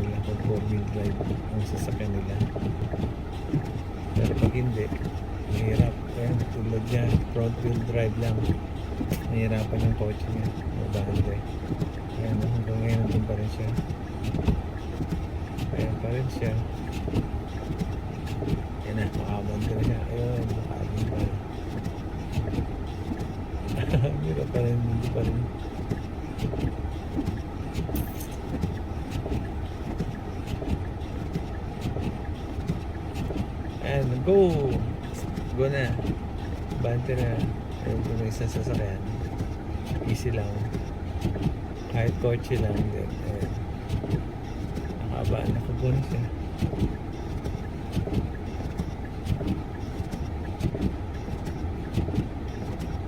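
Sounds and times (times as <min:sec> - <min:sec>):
car engine rumbling: 0:00.0 - 0:53.0.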